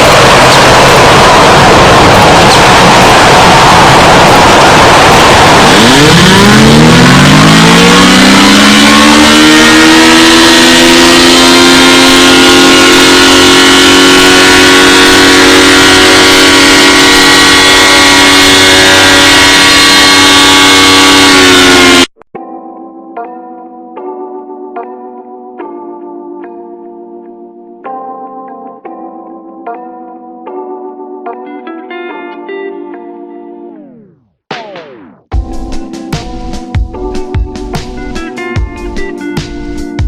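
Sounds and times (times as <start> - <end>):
buzzing alarm drone: 0.0 - 22.1
harsh static noise: 0.0 - 22.2.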